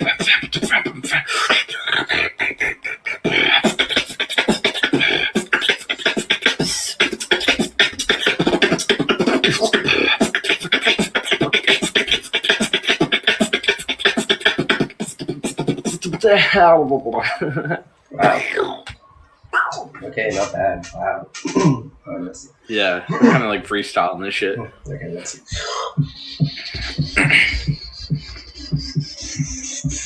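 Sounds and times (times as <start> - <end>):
human beatboxing: 0.0 - 17.5, 18.2 - 20.0, 24.6 - 30.0
short pitched vocal sounds: 18.1 - 20.1.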